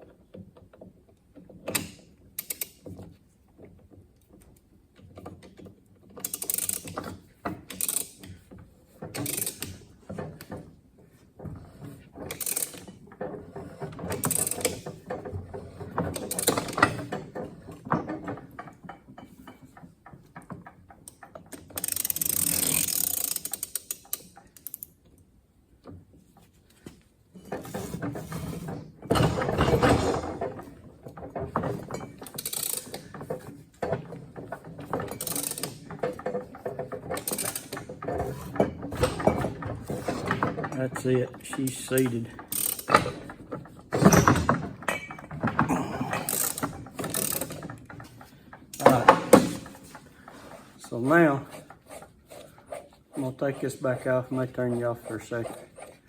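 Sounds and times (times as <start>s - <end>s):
ratchet wrench clicking: 6.2s - 7.0s, 9.2s - 9.7s, 12.3s - 12.9s, 21.8s - 24.9s, 32.3s - 33.0s.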